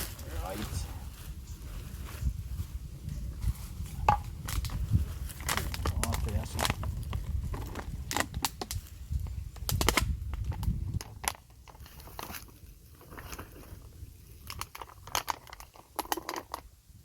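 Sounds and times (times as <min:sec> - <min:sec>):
crunching and crackling clicks: 0:04.1 - 0:16.7.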